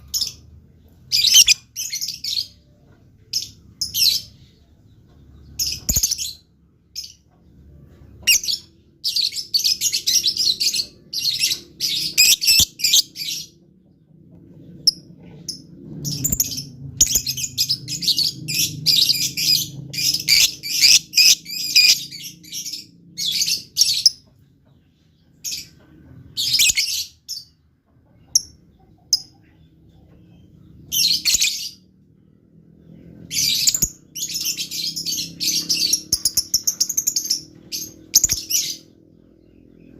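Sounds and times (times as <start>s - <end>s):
lovebird chirping rapidly: 1.1s - 2.5s, 5.6s - 6.4s, 8.2s - 13.5s, 14.9s - 24.2s, 26.4s - 27.5s, 30.9s - 31.8s, 33.3s - 38.9s.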